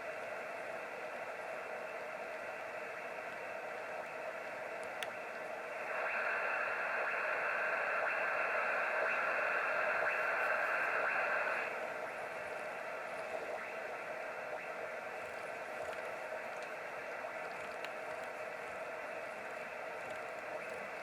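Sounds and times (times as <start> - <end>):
noisy radio signal: 0.0 - 21.0
radio receiver hiss and static: 0.0 - 21.0
radio click: 4.7 - 21.0.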